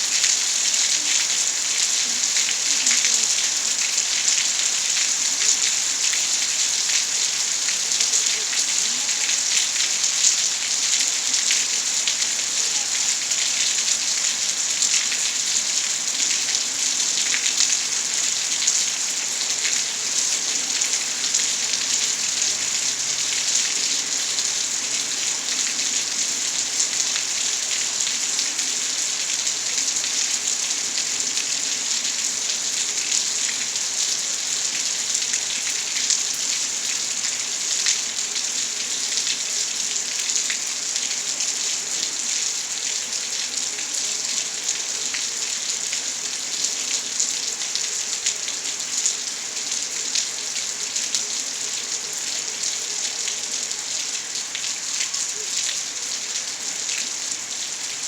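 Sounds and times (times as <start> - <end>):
steady rainfall: 0.0 - 58.0.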